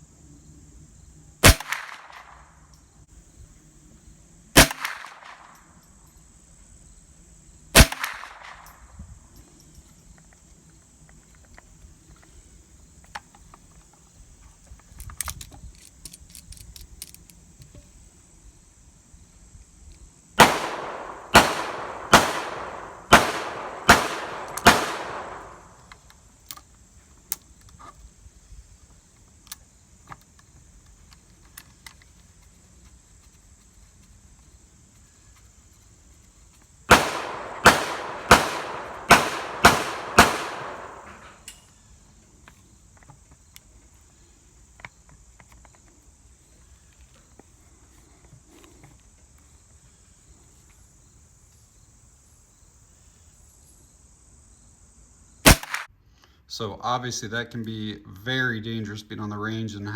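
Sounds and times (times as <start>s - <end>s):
rifle shots: 1.4s - 2.4s, 4.6s - 5.5s, 7.8s - 8.7s, 20.4s - 25.9s, 36.9s - 41.4s, 55.4s - 55.9s.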